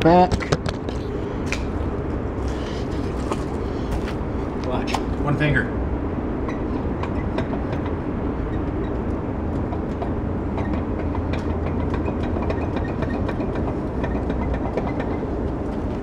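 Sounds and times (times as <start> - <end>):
steady low rumble: 0.0 - 16.0
wheel hub clicking and knocking: 6.4 - 16.0.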